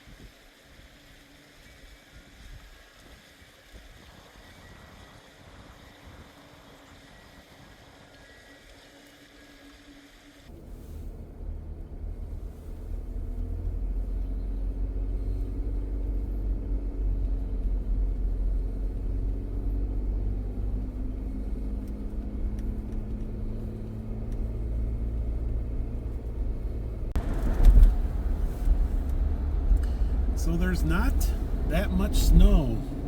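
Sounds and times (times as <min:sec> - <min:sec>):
tyres on road: 0:00.0 - 0:33.0
car engine rumbling: 0:10.5 - 0:33.0.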